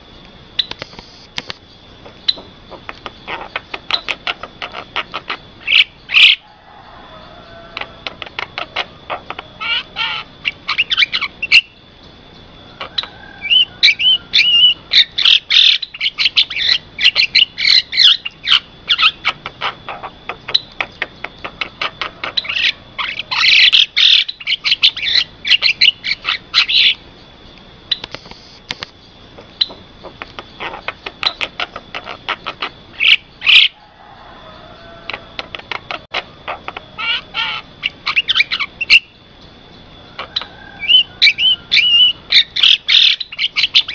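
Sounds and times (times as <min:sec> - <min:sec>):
bird chattering and whistling: 0:02.0 - 0:27.1, 0:29.3 - 0:43.9.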